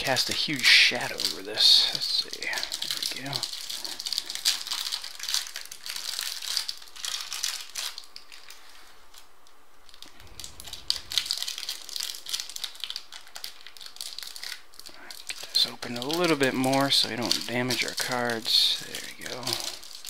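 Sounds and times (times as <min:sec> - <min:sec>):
plastic wrapper crinkling: 0:00.0 - 0:20.0
short low rumble: 0:10.1 - 0:11.9.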